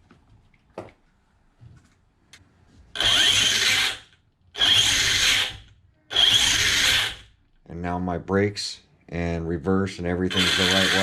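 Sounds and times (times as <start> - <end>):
electric motor spinning up: 3.0 - 7.3, 10.3 - 11.0.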